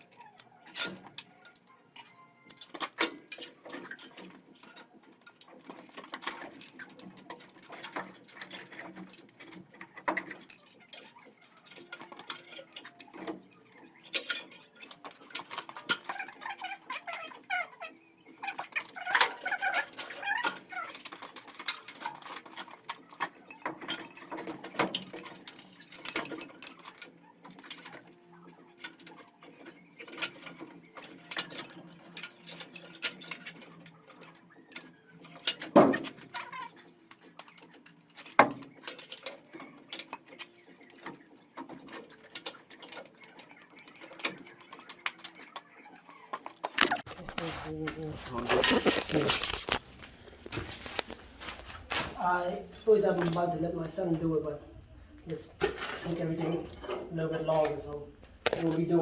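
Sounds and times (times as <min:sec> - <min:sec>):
tools and metal fittings clicking: 0:00.0 - 0:47.4
wavering squeak: 0:10.5 - 0:24.7.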